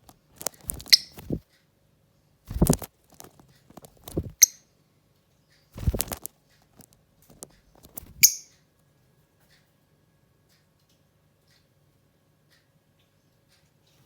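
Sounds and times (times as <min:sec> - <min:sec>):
rustling and scuffling: 0:00.0 - 0:01.4, 0:02.5 - 0:04.4, 0:05.8 - 0:08.2
lovebird chirps: 0:00.6 - 0:01.4, 0:04.0 - 0:04.6, 0:08.0 - 0:08.5.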